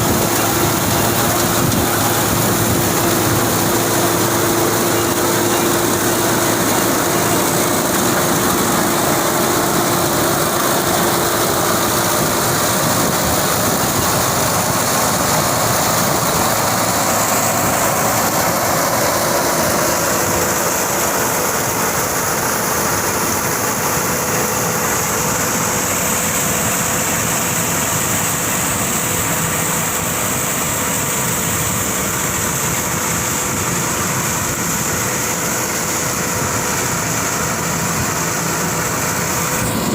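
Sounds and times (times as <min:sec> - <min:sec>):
straw chopper mechanical rush: 0:00.0 - 0:28.3
tractor engine running: 0:00.0 - 0:39.9.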